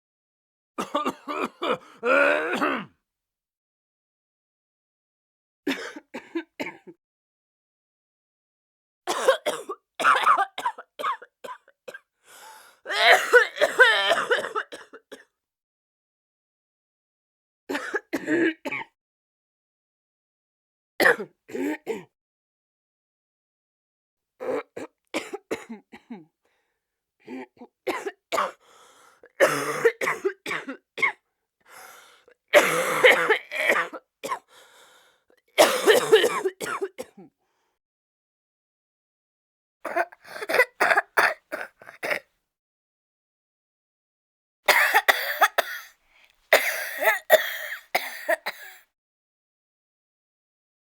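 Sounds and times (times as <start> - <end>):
person coughing: 0.8 - 2.9, 5.7 - 6.9, 9.1 - 12.0, 12.9 - 15.3, 24.4 - 26.3, 27.3 - 28.6, 29.4 - 31.2, 32.6 - 34.5, 35.6 - 37.3, 39.9 - 42.2, 44.7 - 45.9, 46.5 - 48.8
faint breath drawn in: 12.2 - 12.8, 28.6 - 29.2, 31.7 - 32.3, 34.5 - 35.2.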